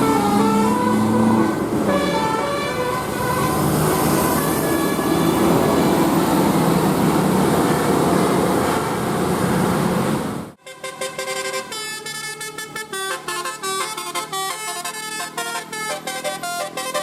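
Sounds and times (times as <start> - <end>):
bus and traffic din: 0.0 - 17.0
vehicle horn: 10.6 - 17.0.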